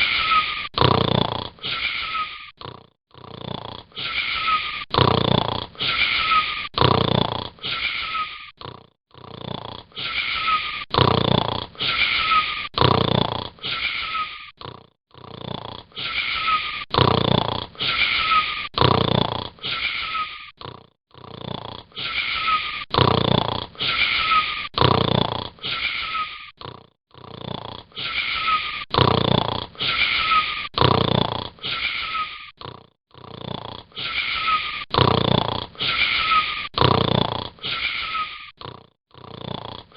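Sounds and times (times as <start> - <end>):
whistling snores: 0.0 - 39.9.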